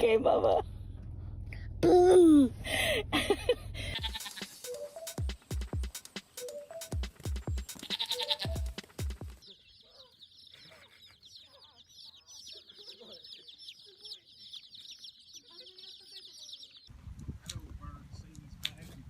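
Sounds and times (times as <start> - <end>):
animal bleat: 3.9 - 4.5, 7.8 - 8.7
music with a heavy beat: 4.0 - 9.4
chicks peeping: 4.2 - 19.0
chickens clucking: 7.6 - 16.9.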